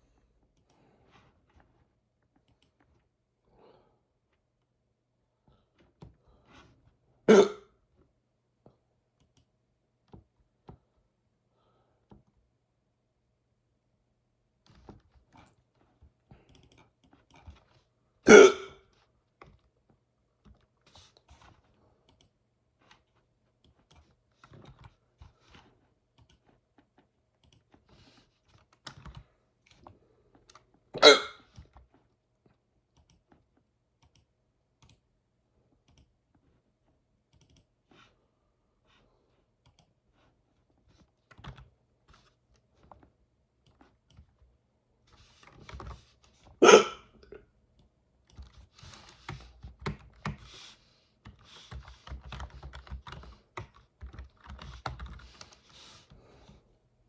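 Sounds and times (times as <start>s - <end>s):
keyboard typing and clicking: 2.3s - 3.0s, 16.3s - 17.8s, 20.5s - 30.7s, 32.9s - 33.4s, 34.0s - 35.0s, 37.3s - 37.8s, 39.6s - 40.0s, 47.8s - 50.6s, 51.2s - 56.1s
person hiccuping: 7.3s - 7.7s, 18.3s - 18.8s, 31.0s - 31.4s, 46.6s - 47.4s.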